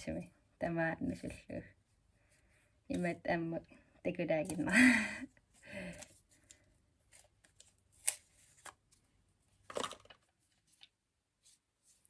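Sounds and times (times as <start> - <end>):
packaging rustling: 9.6 - 10.9.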